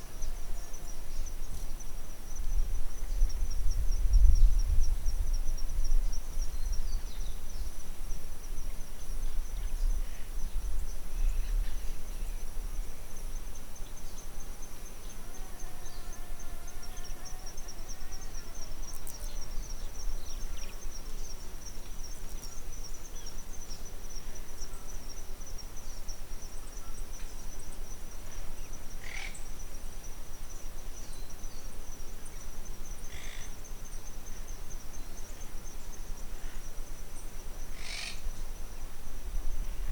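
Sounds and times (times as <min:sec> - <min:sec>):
wind rumble on microphone: 0:00.0 - 0:14.0, 0:37.8 - 0:39.9
insects trilling: 0:00.0 - 0:39.9.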